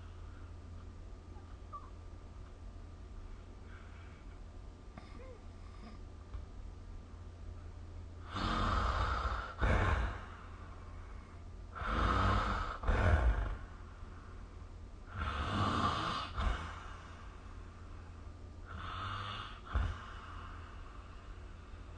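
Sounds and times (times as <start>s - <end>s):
person snoring: 8.2s - 10.5s, 11.8s - 13.7s, 15.1s - 17.1s, 18.7s - 20.8s.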